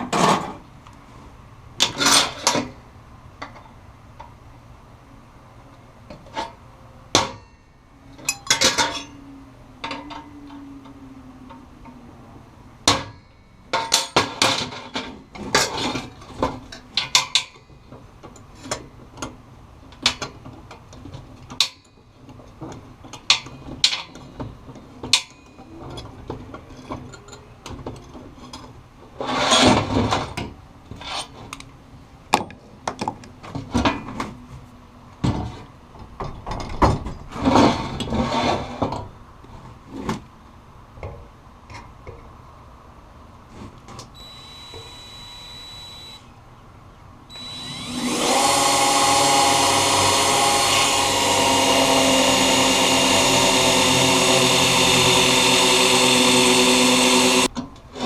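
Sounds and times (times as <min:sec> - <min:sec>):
metal tools clanking: 0:07.4 - 0:09.2
metal clattering scrape: 0:37.2 - 0:38.9.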